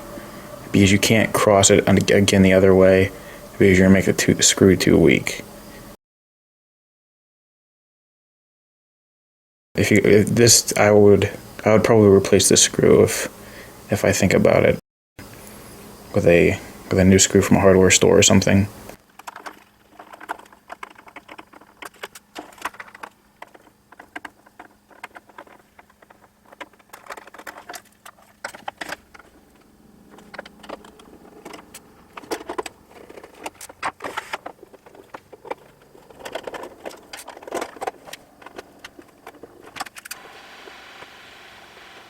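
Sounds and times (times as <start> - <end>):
faint steady hum: 0.0 - 6.0, 9.8 - 42.0
hand tools and metal parts clicking: 19.1 - 40.2.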